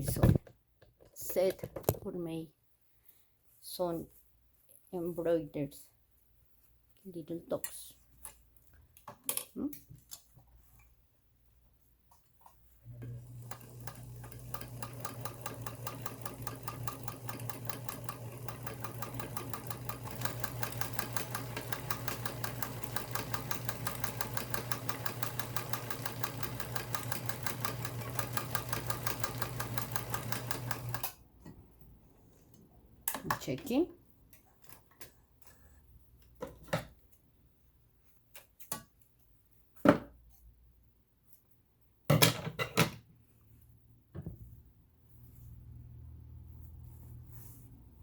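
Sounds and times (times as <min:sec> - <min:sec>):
sewing machine stitching: 0:12.9 - 0:31.2.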